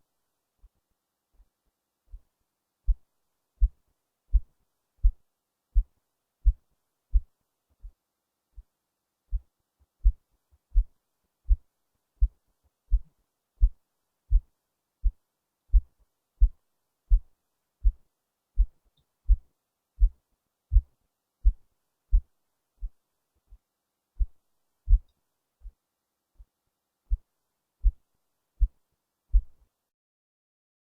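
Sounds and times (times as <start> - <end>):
heartbeat thumps: 3.6 - 8.0, 9.3 - 10.9, 12.2 - 18.0, 20.0 - 23.0, 24.2 - 25.1, 27.1 - 28.0, 28.6 - 29.5.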